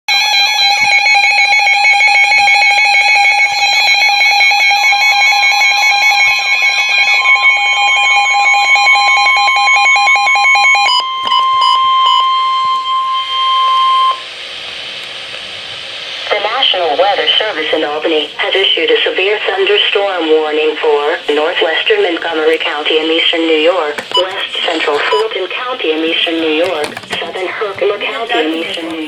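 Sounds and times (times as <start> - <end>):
rapid electronic alarm: 0.1 - 14.4, 16.3 - 29.0
steady weather alert tone: 0.1 - 29.0
radio hiss: 14.0 - 29.0.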